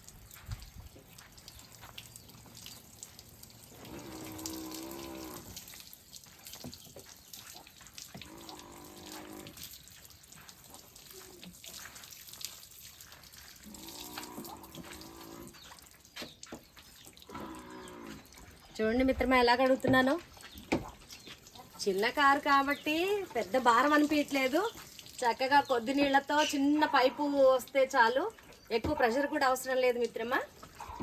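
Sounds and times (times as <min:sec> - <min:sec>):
water running from hose: 0:00.0 - 0:31.0
cattle mooing: 0:03.9 - 0:05.5, 0:17.3 - 0:18.2.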